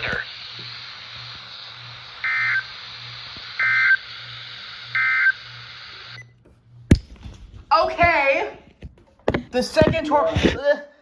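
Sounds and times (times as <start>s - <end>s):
radio hiss: 0.0s - 6.2s, 9.3s - 10.6s
short digital data bursts: 0.0s - 6.2s.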